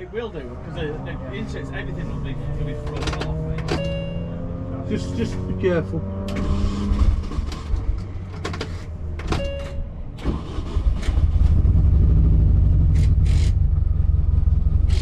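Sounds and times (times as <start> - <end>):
car engine running roughly: 10.2 - 15.0.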